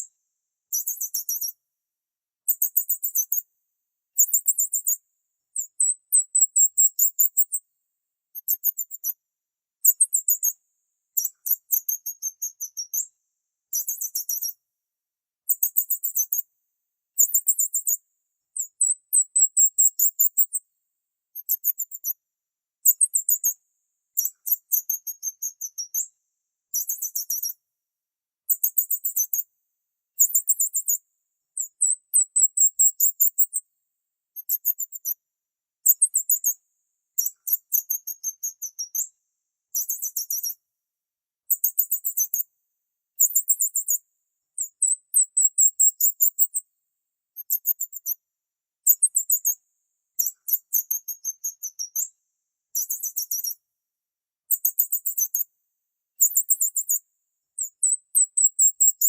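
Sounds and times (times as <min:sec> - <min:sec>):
small bird chirping high-pitched: 0:00.7 - 0:01.6, 0:02.4 - 0:03.5, 0:04.2 - 0:07.6, 0:08.3 - 0:09.2, 0:09.8 - 0:14.6, 0:15.4 - 0:16.5, 0:17.2 - 0:18.0, 0:18.6 - 0:20.6, 0:21.3 - 0:22.2, 0:22.8 - 0:26.1, 0:26.7 - 0:27.6, 0:28.5 - 0:29.5, 0:30.2 - 0:33.6, 0:34.4 - 0:35.2, 0:35.8 - 0:40.6, 0:41.5 - 0:42.5, 0:43.2 - 0:46.6, 0:47.4 - 0:48.2, 0:48.8 - 0:49.6, 0:50.2 - 0:53.6, 0:54.5 - 0:55.5, 0:56.2 - 0:59.0.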